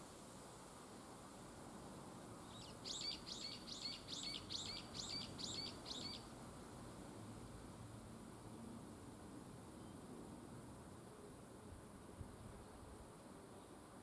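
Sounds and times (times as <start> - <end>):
faint outdoor hiss: 0.0 - 14.0
small bird singing: 2.4 - 6.3.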